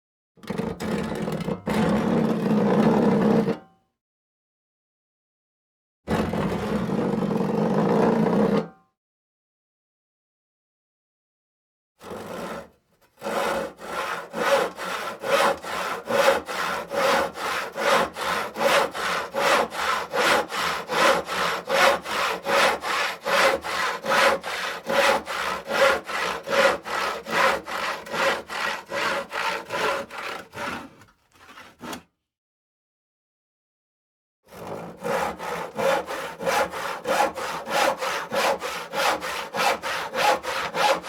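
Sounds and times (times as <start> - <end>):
hand saw cutting wood: 12.0 - 32.1, 34.5 - 41.0.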